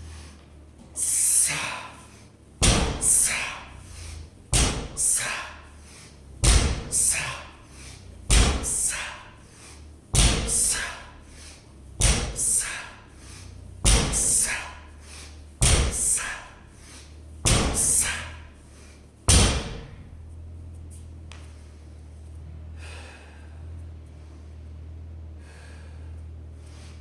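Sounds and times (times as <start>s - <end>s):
low steady hum: 0.0s - 27.0s
barbell thudding on floor: 2.6s - 3.4s, 4.5s - 5.5s, 6.4s - 7.5s, 8.3s - 9.2s, 10.2s - 11.1s, 12.0s - 12.8s, 13.8s - 14.7s, 15.6s - 16.4s, 17.4s - 18.4s, 19.3s - 20.2s.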